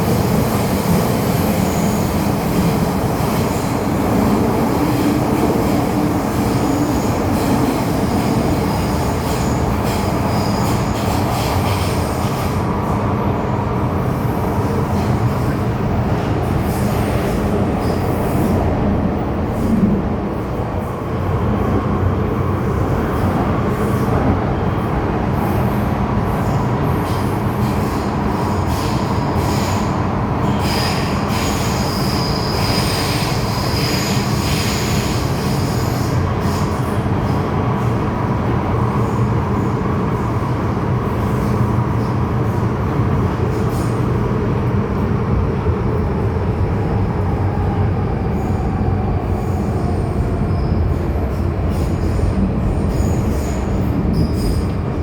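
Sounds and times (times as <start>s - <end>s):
train wheels rumbling on rail: 0.0s - 55.0s
train wheels squealing: 0.1s - 12.6s, 26.4s - 37.5s, 47.6s - 55.0s.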